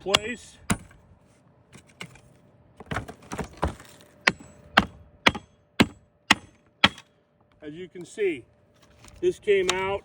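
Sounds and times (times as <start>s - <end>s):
hammer striking nails: 4.2s - 7.1s.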